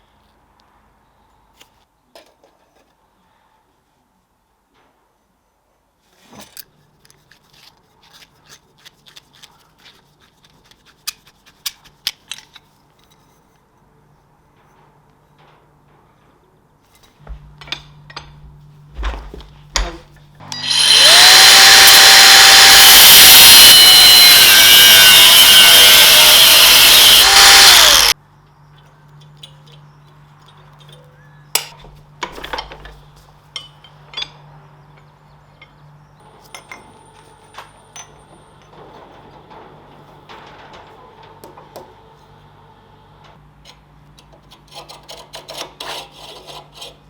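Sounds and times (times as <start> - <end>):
handheld power tool running: 20.4 - 28.2.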